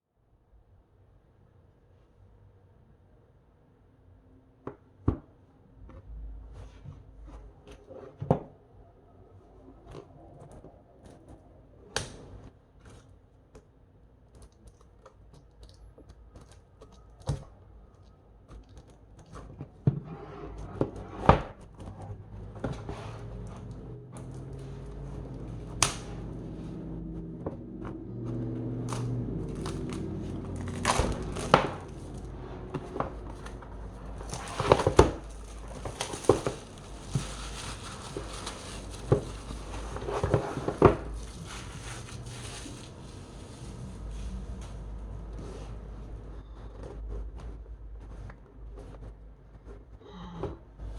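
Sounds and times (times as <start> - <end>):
low steady hum: 15.0 - 50.9
packaging clicks and knocks: 28.8 - 41.4
packaging crinkling and tearing: 28.8 - 44.1.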